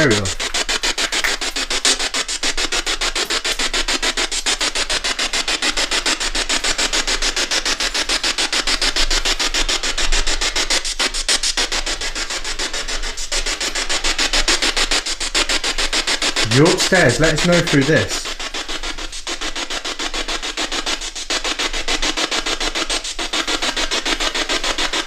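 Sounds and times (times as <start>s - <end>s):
pulsing radio static hiss: 0.0s - 0.4s, 16.4s - 18.3s.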